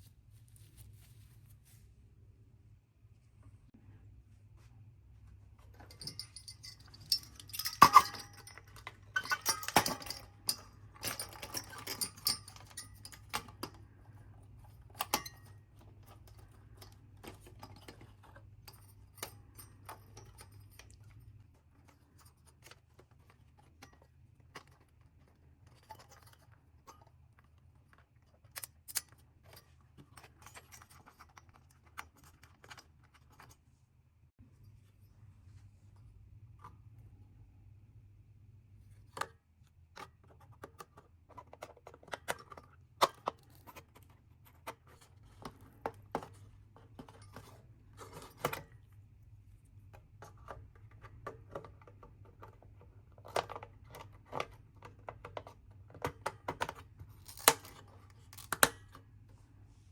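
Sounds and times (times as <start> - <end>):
faint low hum: 0.0 - 56.0
small hard parts clicking and rattling: 5.6 - 33.6.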